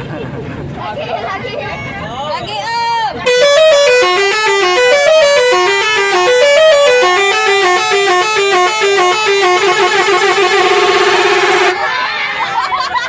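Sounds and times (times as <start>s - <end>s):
bus horn playing a melody: 3.3s - 11.8s.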